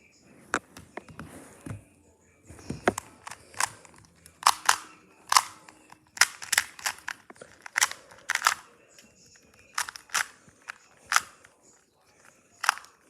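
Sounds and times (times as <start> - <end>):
plastic puzzle cube clicking: 2.8 - 13.0.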